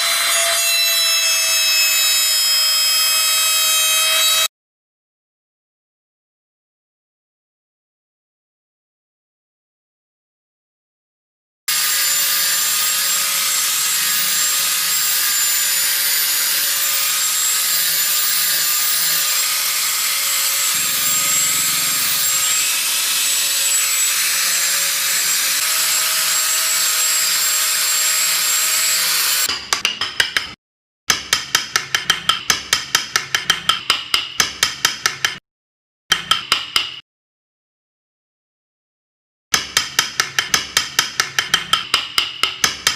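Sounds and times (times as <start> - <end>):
power tool whining: 11.7 - 29.5.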